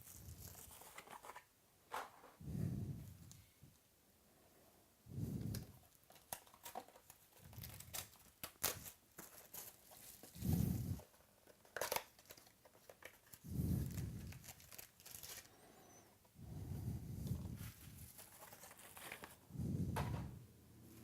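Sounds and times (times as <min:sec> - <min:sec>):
foil wrappers tearing and crinkling: 0:00.0 - 0:01.2, 0:06.1 - 0:10.4, 0:11.5 - 0:15.6, 0:17.9 - 0:19.4.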